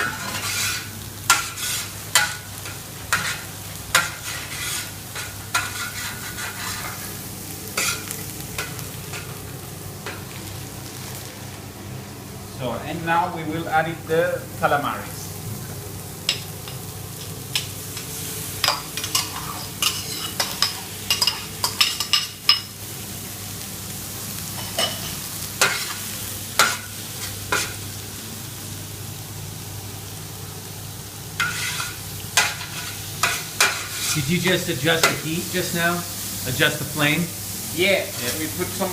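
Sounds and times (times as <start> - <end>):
utensil scraping a pan: 0.0 - 7.1, 7.8 - 9.2, 31.4 - 34.3
food sizzling in a pan: 0.0 - 38.9.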